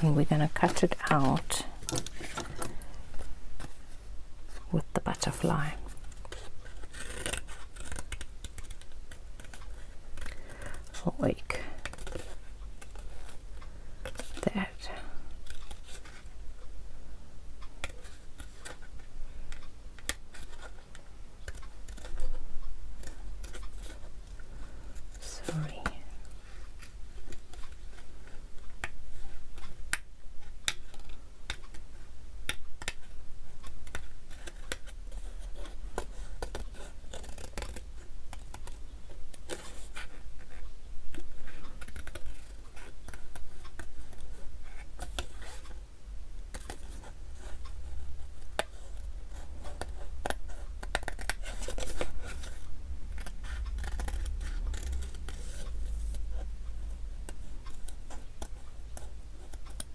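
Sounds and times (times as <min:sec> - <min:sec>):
scissors snipping paper: 0:06.0 - 0:10.9, 0:33.8 - 0:38.8.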